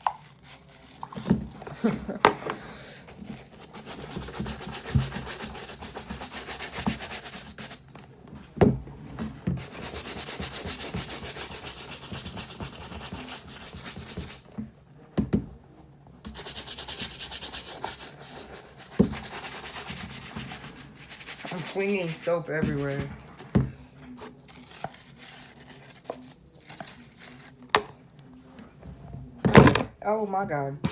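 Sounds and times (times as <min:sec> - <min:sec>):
brush scrubbing sneaker: 0:03.4 - 0:07.8, 0:09.6 - 0:14.4, 0:16.3 - 0:23.2.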